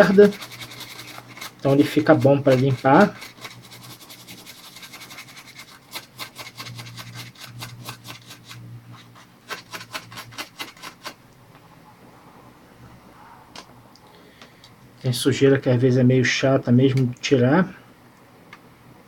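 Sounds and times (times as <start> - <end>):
brush scrubbing circuit board: 0.0 - 11.2.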